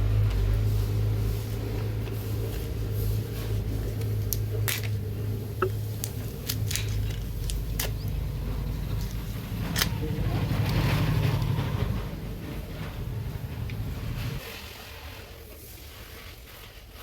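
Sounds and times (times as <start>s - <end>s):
steady low hum: 0.0s - 14.4s
small parts clicking and tapping: 5.6s - 8.2s, 8.8s - 10.8s.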